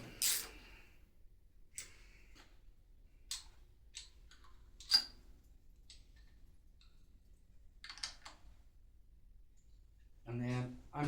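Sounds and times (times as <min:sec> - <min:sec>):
metal parts and tools clinking: 0:00.1 - 0:00.6.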